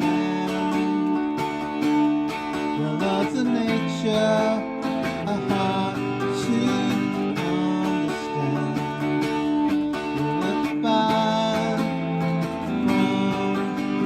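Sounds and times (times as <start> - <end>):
acoustic guitar music: 0.0 - 14.0.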